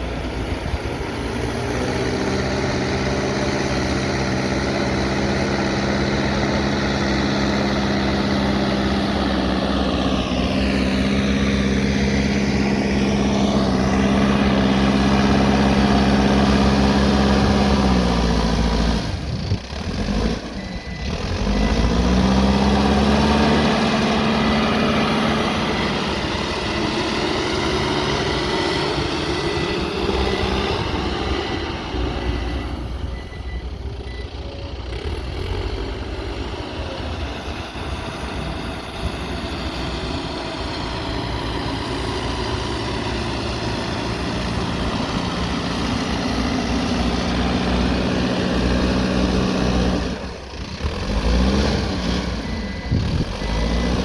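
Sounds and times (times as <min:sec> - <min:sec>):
diesel engine under load: 0:00.0 - 0:54.0.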